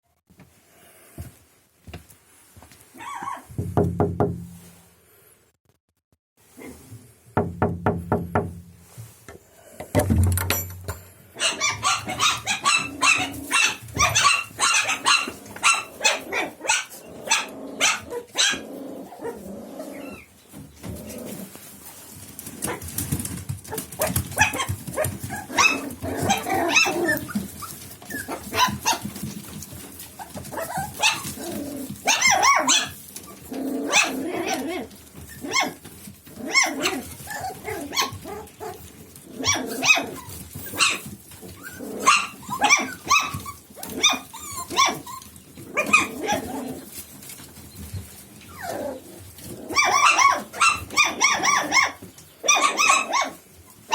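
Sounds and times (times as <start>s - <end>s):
dog barking: 11.4s - 19.4s, 32.1s - 33.0s, 49.8s - 53.4s.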